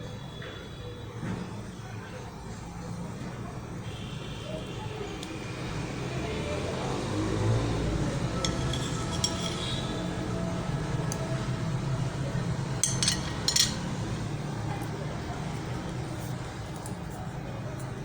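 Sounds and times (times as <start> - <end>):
glassware and utensils clinking: 8.4 - 10.0, 12.8 - 14.2.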